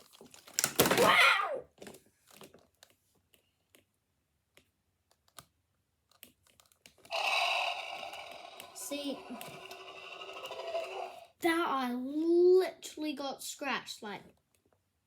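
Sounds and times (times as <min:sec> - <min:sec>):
plastic toys clicking together: 0:00.1 - 0:01.1, 0:04.6 - 0:11.2
loud sustained sound: 0:07.1 - 0:11.3.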